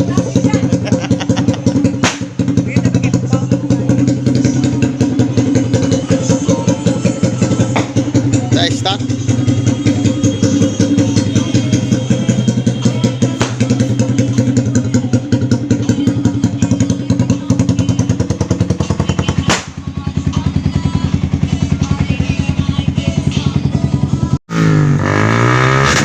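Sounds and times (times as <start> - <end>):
motorcycle engine idling: 0.0 - 24.4.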